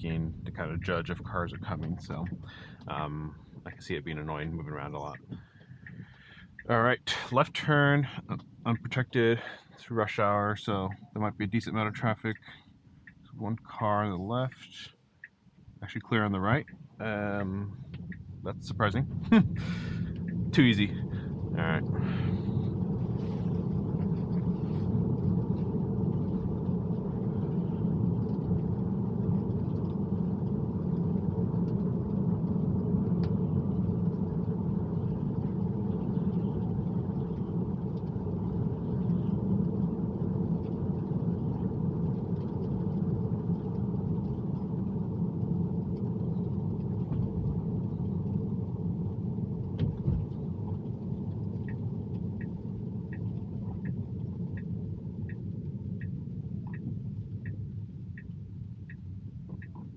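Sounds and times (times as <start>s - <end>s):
tyres rumbling on wet pavement: 17.4s - 57.4s.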